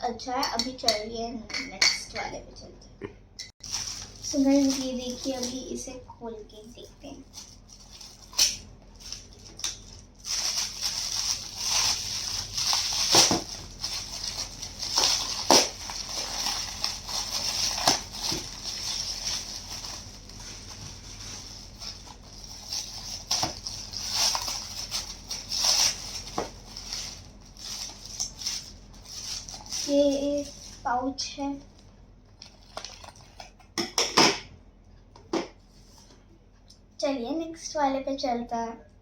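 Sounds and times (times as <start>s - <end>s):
gift wrapping crinkling: 3.6s - 30.9s, 32.4s - 33.6s.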